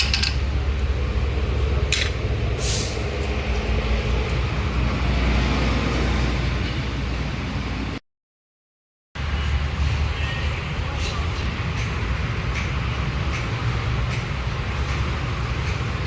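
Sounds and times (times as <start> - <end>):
short sharp hisses: 2.6 - 3.0.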